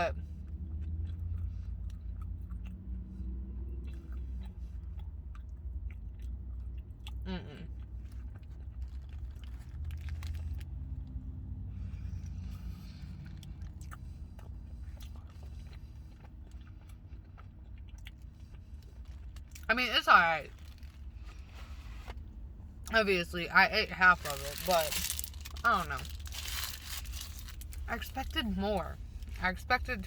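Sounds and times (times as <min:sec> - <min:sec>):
steady low hum: 0:00.0 - 0:30.0
chewing and biting: 0:00.2 - 0:19.7.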